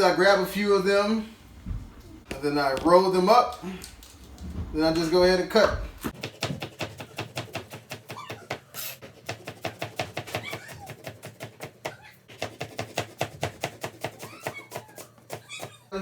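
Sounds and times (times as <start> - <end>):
knife chopping on cutting board: 4.8 - 15.8.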